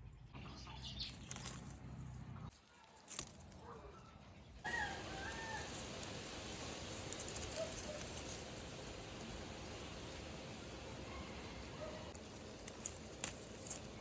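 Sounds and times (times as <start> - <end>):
steady hiss: 4.6 - 14.0.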